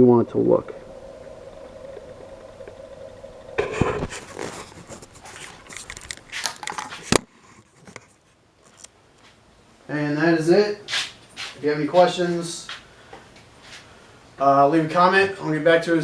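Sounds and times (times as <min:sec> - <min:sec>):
faint steady hum: 0:00.0 - 0:07.5
scraping and rustling handling noise: 0:03.6 - 0:08.9.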